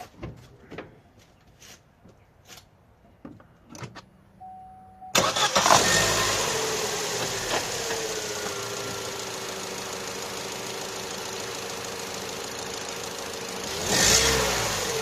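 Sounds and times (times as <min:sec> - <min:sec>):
short beep: 0:04.4 - 0:05.2
car engine cranking and running: 0:05.1 - 0:15.0.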